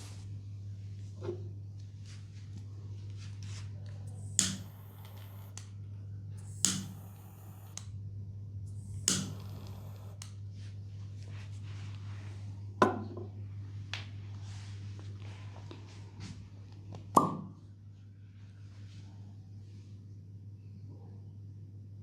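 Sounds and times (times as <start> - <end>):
steady low hum: 0.0 - 22.0
sharp ringing clicks: 6.4 - 7.9, 9.0 - 10.3.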